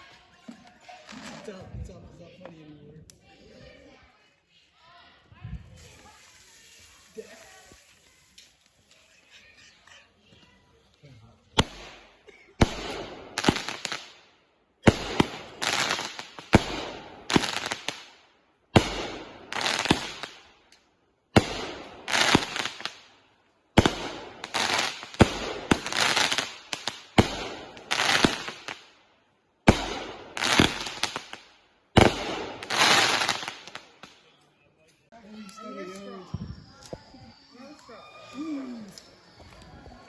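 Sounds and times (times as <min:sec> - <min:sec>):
firework reports with crackling: 0:14.8 - 0:20.6, 0:21.3 - 0:23.1, 0:23.7 - 0:29.0, 0:29.6 - 0:34.3.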